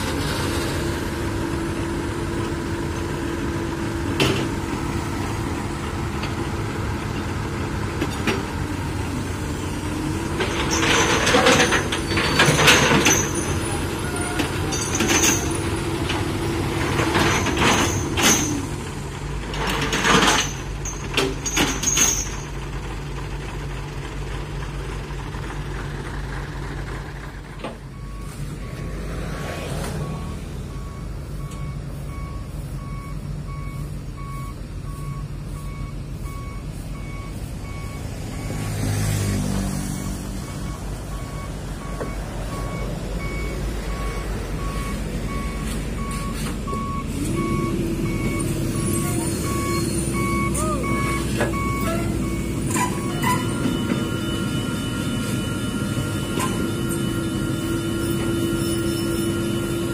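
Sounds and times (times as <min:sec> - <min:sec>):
diesel truck engine running: 0:00.0 - 0:59.9
air brakes hissing and clanking: 0:10.2 - 0:18.9, 0:30.8 - 0:39.2, 0:43.9 - 0:59.9
reversing alarm beeping: 0:27.8 - 0:59.9.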